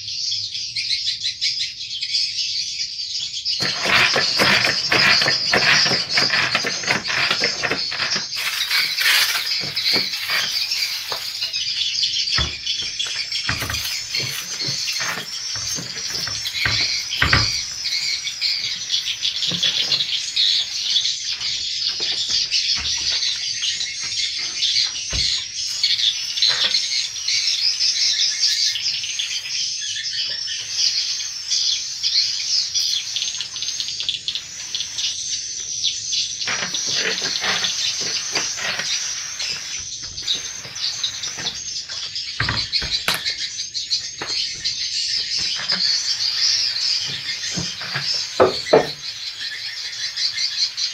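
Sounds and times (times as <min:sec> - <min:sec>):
swiftlets twittering: 0:03.6 - 0:22.4, 0:25.4 - 0:44.3, 0:45.1 - 0:50.9.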